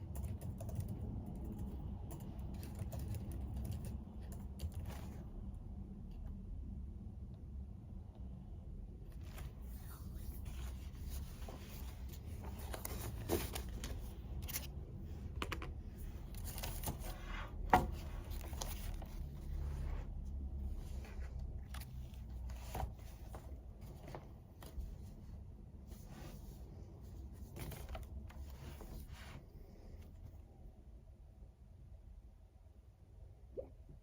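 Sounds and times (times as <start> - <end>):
paper rustling: 9.2 - 20.1, 20.8 - 25.2, 27.2 - 29.5.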